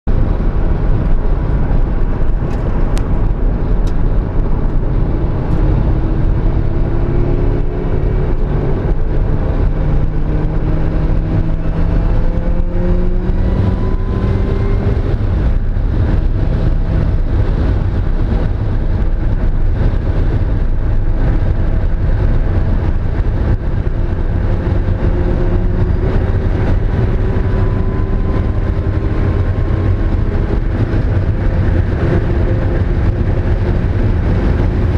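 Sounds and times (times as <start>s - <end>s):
car engine revving under load: 0.1s - 34.9s.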